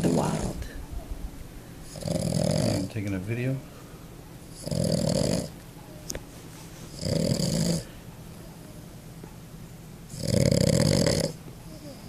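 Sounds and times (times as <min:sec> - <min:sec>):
dog snoring: 0:01.9 - 0:02.9, 0:04.5 - 0:05.6, 0:06.9 - 0:07.9, 0:10.1 - 0:12.0.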